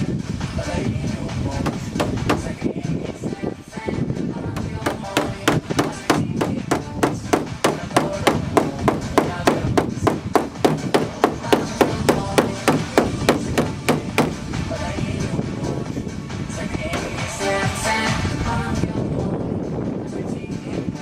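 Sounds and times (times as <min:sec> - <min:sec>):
rapid hammer blows: 0:01.6 - 0:02.7, 0:04.6 - 0:14.6.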